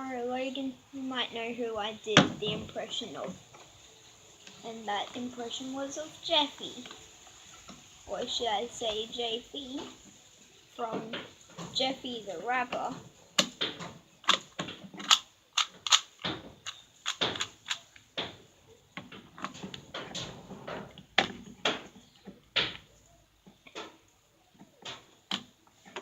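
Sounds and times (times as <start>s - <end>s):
puzzle cube plastic clicks: 12.7s - 18.4s.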